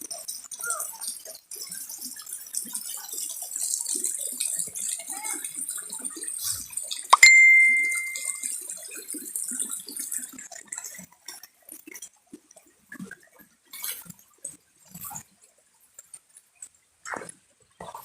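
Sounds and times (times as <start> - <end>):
faint flowing water: 0.0 - 18.0
sharp metallic ring: 7.2 - 8.4.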